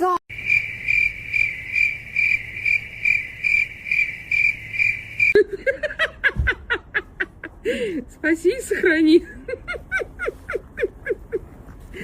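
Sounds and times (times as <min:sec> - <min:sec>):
cricket chirping: 0:00.3 - 0:05.4.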